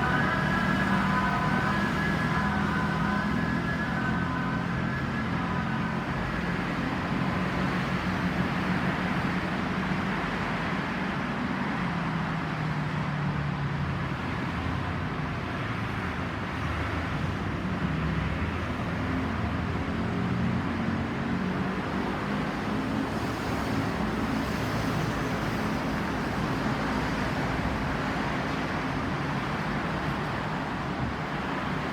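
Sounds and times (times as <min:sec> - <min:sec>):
ambulance siren: 0:00.0 - 0:07.0
passing vehicles: 0:00.0 - 0:31.9.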